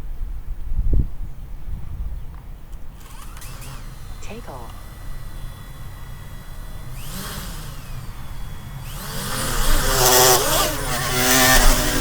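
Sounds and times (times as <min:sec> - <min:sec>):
propeller buzz: 0:02.7 - 0:12.0
drone motors whining: 0:03.0 - 0:12.0.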